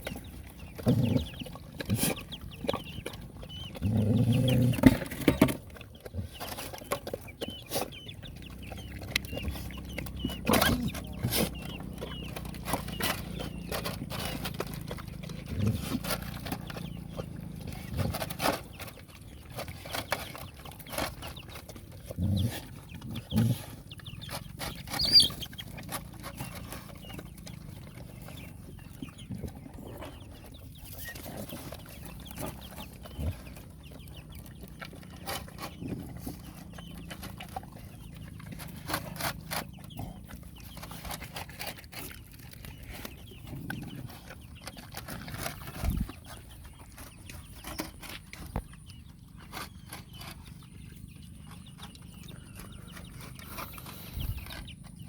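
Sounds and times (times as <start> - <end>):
dogs chewing and crunching food: 0.0 - 55.0
dog growling: 0.7 - 2.0, 3.7 - 5.3, 22.0 - 23.8.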